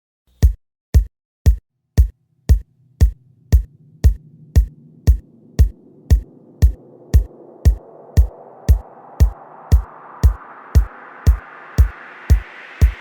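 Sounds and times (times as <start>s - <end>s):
drum machine kick drum: 0.3s - 13.0s
low synthesizer layer: 2.8s - 13.0s.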